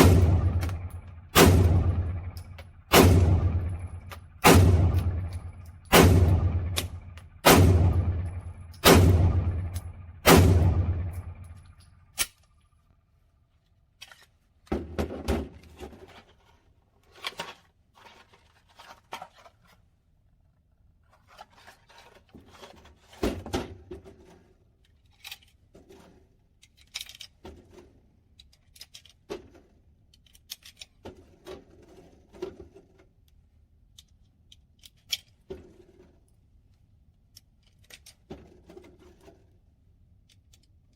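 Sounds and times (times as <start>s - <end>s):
pistol shots: 0.0s - 11.8s.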